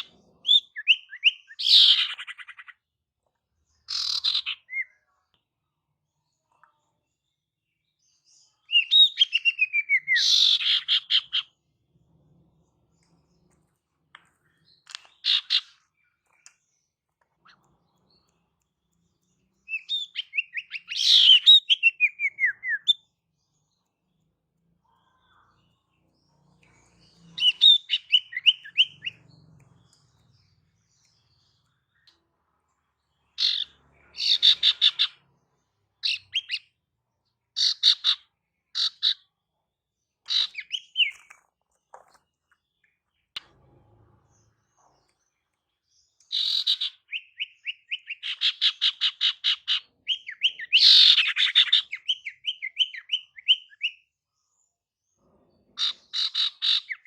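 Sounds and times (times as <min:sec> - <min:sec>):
bird calling chirps and trills: 0:00.0 - 0:02.9, 0:03.8 - 0:05.2, 0:08.4 - 0:11.6, 0:14.4 - 0:32.3, 0:33.1 - 0:35.3, 0:35.9 - 0:36.8, 0:37.6 - 0:39.4, 0:40.2 - 0:43.6, 0:44.8 - 0:54.6, 0:55.6 - 0:57.0.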